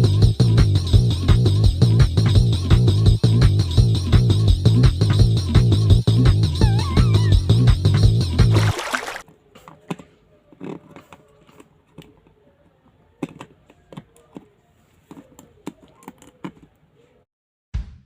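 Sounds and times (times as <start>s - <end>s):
music: 0.0s - 9.2s
plastic toy and packaging handled: 9.3s - 17.2s.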